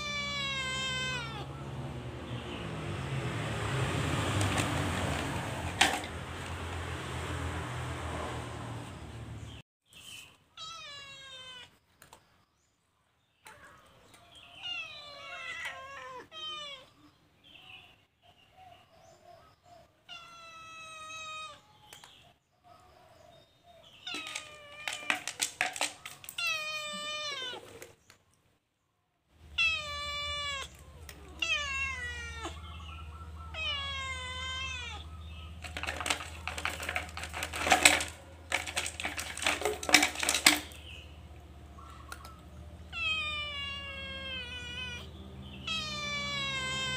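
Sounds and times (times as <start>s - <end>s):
cat meowing: 0.0s - 1.7s, 10.6s - 11.8s, 14.5s - 17.0s, 20.0s - 21.8s, 24.0s - 25.5s, 26.3s - 28.0s, 29.5s - 32.9s, 33.5s - 35.2s, 42.8s - 46.9s.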